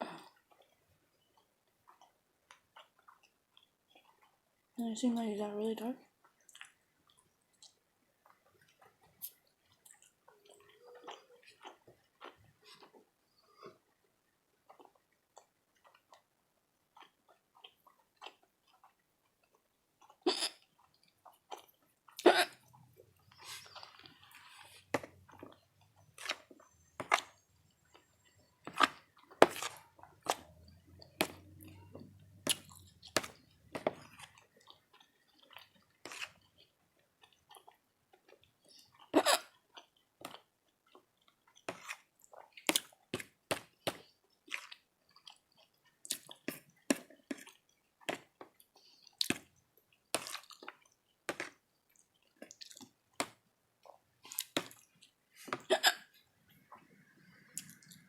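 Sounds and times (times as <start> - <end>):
close chewing mouth smacks: 6.4 - 13.0, 44.4 - 51.0, 51.9 - 52.9.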